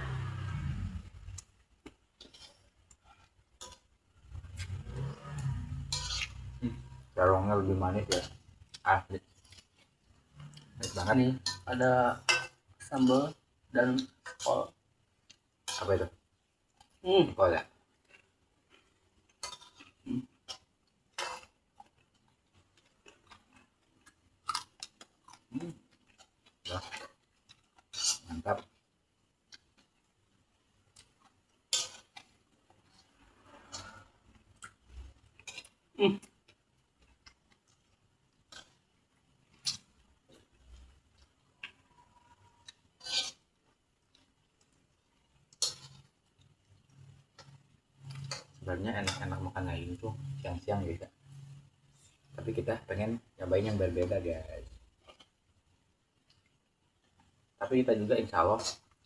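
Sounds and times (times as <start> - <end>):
raw vegetables being chewed: 30.9 - 43.4.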